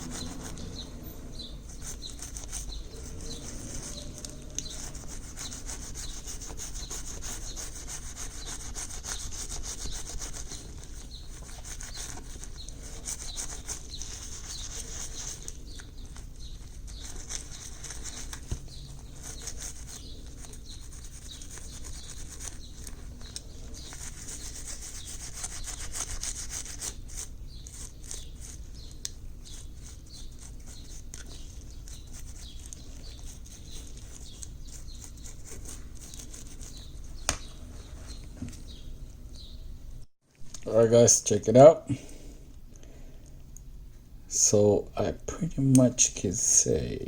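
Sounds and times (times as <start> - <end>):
brush scrubbing metal: 0.0 - 38.8.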